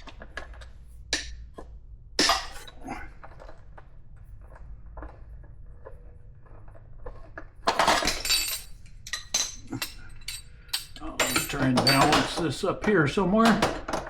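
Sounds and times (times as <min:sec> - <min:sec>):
metal clinks and clatter: 0:07.7 - 0:12.4.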